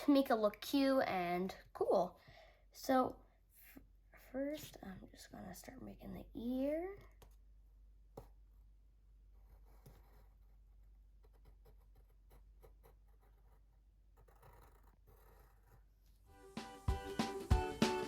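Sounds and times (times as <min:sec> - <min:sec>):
pencil scratching on paper: 0:09.3 - 0:16.0.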